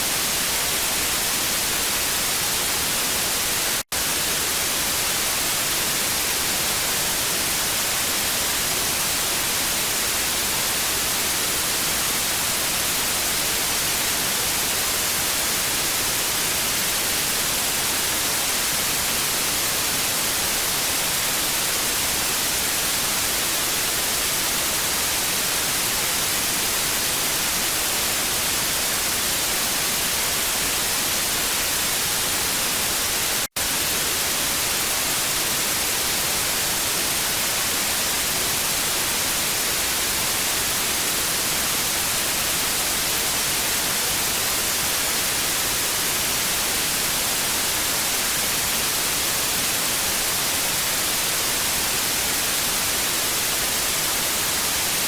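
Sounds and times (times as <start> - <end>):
tv static hiss: 0.0 - 55.0.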